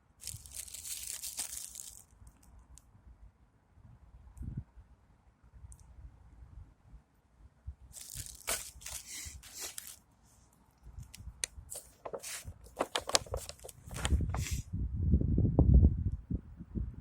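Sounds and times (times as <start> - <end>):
packaging being torn: 0.2 - 2.1, 8.0 - 10.0, 11.7 - 14.6
sharp crackles: 0.2 - 2.5.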